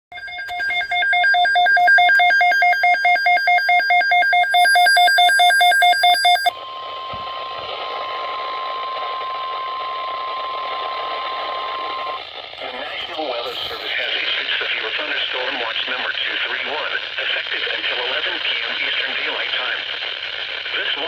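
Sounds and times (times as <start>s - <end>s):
steady alarm tone: 0.0s - 12.2s
rapid electronic alarm beeping: 0.1s - 12.3s
radio static: 0.1s - 21.0s.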